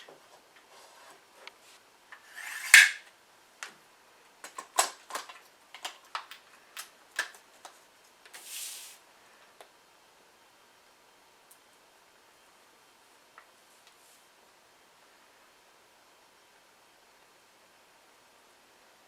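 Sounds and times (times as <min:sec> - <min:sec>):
metal rod sliding rasp: 0:02.2 - 0:03.0.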